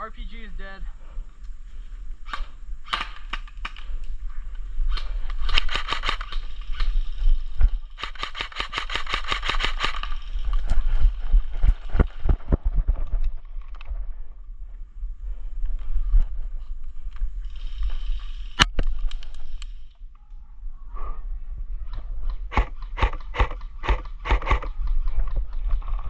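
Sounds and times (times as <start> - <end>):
airsoft gun shots: 8.0 - 10.0, 22.5 - 24.7
heavier thumps: 22.5 - 24.7.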